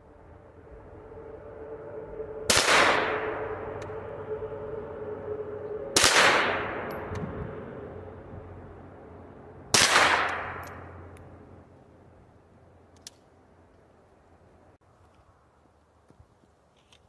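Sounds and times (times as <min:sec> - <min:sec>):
gunshot echo: 0:02.5 - 0:03.3, 0:06.0 - 0:07.0, 0:09.7 - 0:10.8
gunshots: 0:02.5 - 0:03.3, 0:06.0 - 0:07.0, 0:09.7 - 0:10.7.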